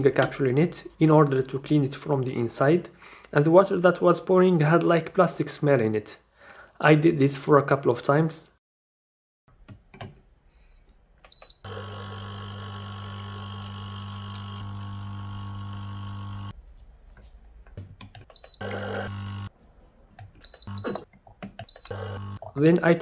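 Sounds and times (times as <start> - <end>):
coffee machine beeping: 11.4 - 16.6, 18.4 - 19.5, 20.5 - 21.1, 21.7 - 22.4
pump buzzing: 11.6 - 16.6, 18.6 - 19.5, 20.7 - 21.0, 21.9 - 22.5.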